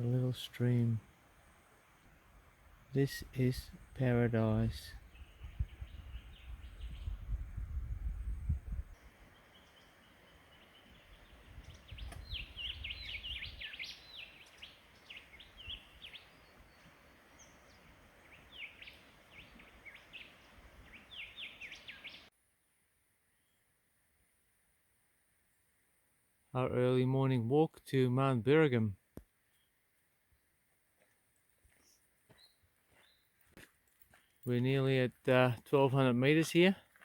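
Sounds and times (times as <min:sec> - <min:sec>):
small stream: 0:00.0 - 0:04.2, 0:08.9 - 0:22.6
small birds chirping: 0:00.0 - 0:22.3, 0:29.4 - 0:34.6
wind rumbling on microphone: 0:03.6 - 0:09.3, 0:11.0 - 0:16.8.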